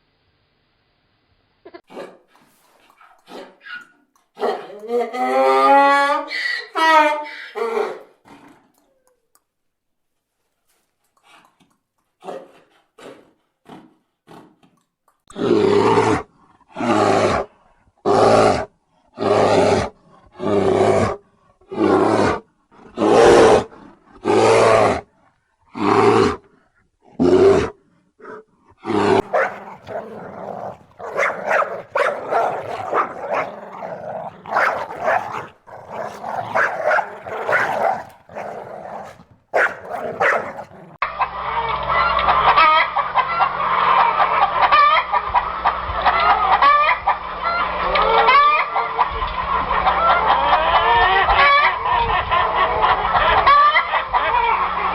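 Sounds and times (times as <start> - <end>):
rough animal sounds: 28.8 - 41.0
dog barking: 29.2 - 41.0.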